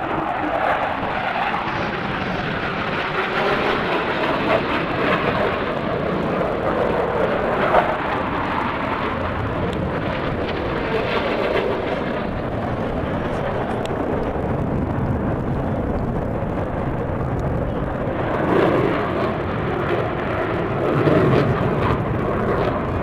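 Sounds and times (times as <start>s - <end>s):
airplane engine rushing: 0.0s - 23.0s.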